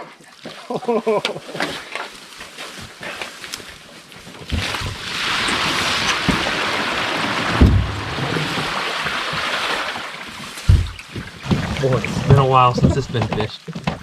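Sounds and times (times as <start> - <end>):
water rushing and sloshing: 2.2 - 14.0
dull knocks against canoe hull: 7.6 - 8.7, 10.6 - 14.0.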